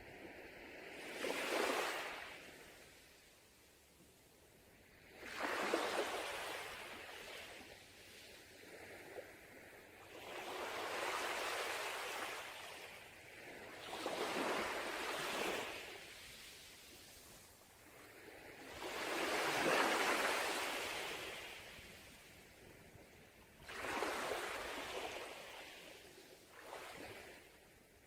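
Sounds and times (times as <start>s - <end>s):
sea waves breaking on beach: 0.3s - 2.9s, 5.0s - 22.3s, 23.6s - 27.6s.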